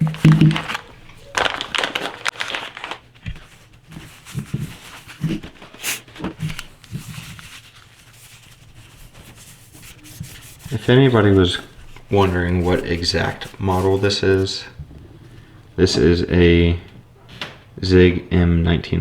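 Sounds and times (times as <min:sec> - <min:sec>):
cloth rag rubbing metal: 0:06.8 - 0:14.7.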